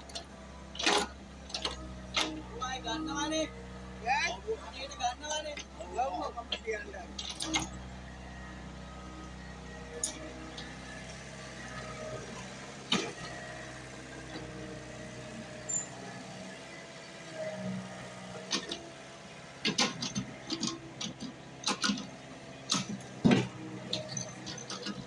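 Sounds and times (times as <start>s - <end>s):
diesel engine running: 0.0s - 25.0s
sharp knocks and clatter: 19.6s - 22.1s, 22.7s - 25.0s.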